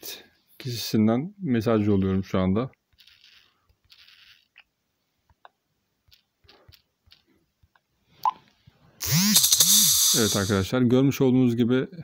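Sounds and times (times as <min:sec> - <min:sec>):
sharp click: 0:09.0 - 0:10.6.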